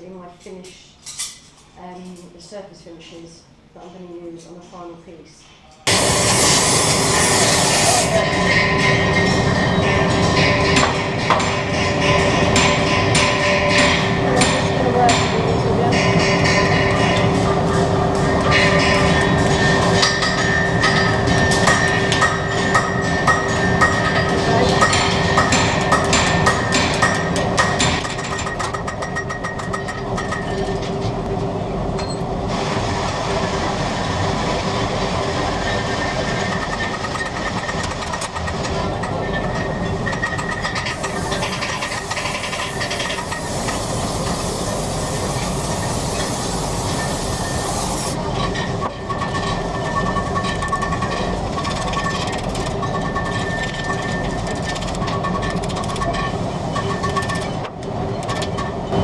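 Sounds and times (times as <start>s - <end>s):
high hiss: 5.9s - 8.2s, 40.9s - 48.2s
train rail rumble: 5.9s - 59.0s.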